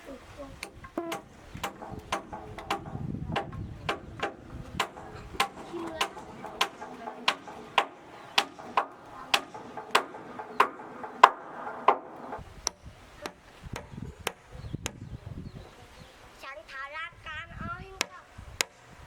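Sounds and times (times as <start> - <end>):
hammer striking wooden plank: 0.6 - 15.0.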